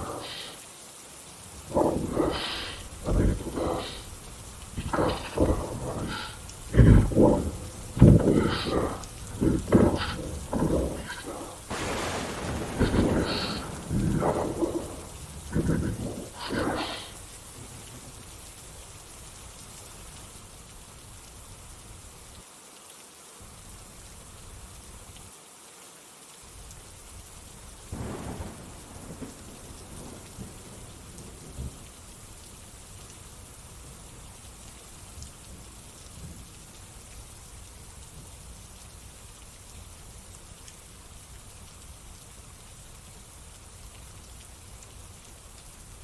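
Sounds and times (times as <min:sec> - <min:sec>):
steady rain falling: 0:00.0 - 0:46.0
thunder rumbling: 0:01.7 - 0:18.3, 0:27.9 - 0:32.0.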